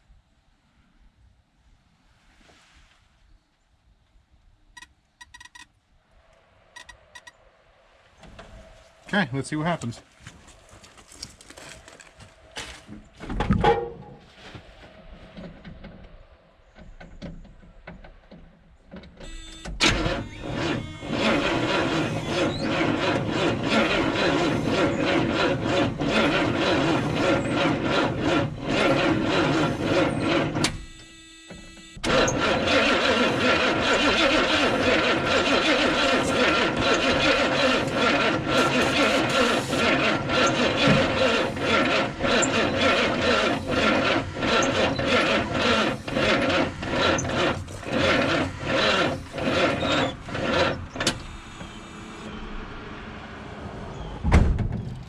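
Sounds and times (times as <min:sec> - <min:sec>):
car engine starting and running rough: 0:15.3 - 0:55.0.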